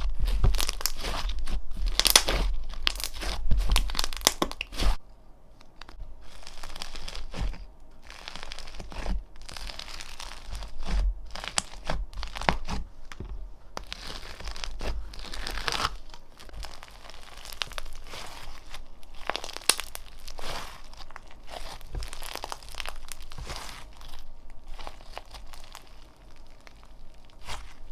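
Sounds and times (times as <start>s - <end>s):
crackling pops: 1.9s - 5.0s, 19.2s - 20.1s.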